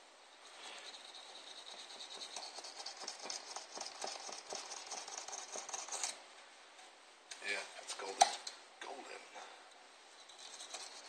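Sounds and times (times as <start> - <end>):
small parts scratching and clicking: 0.5 - 6.2, 10.2 - 11.0.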